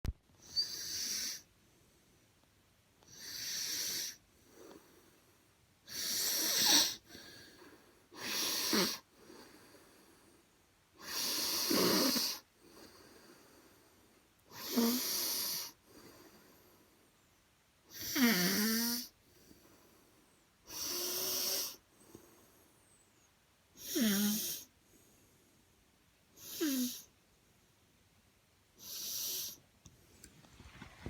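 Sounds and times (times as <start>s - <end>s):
person snoring: 8.2s - 9.6s, 14.5s - 16.4s, 17.9s - 19.2s, 23.8s - 24.7s.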